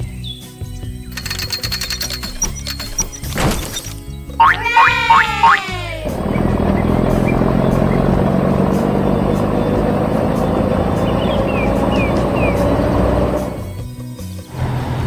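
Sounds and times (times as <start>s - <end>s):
faint high falling chirps: 4.4s - 6.0s
heavy vehicle engine droning: 4.4s - 15.0s.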